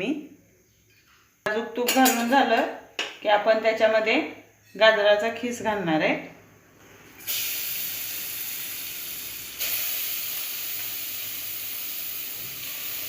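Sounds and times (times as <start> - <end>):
carrot sizzling in hot fat: 6.8 - 13.0.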